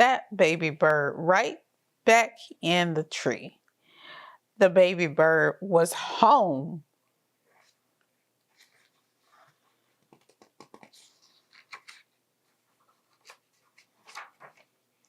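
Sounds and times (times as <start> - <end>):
soft rustles: 7.4 - 15.0.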